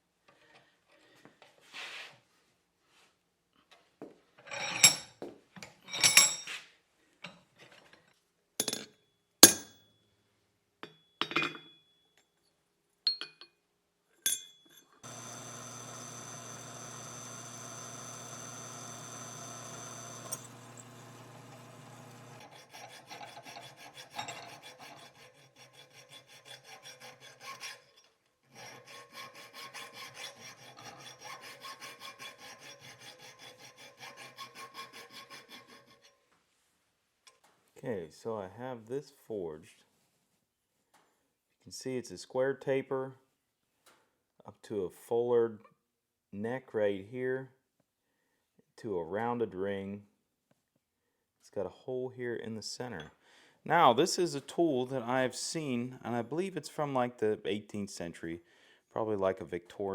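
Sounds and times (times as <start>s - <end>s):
electric motor humming: 15.0s - 22.5s
file rasping on steel: 15.0s - 36.2s.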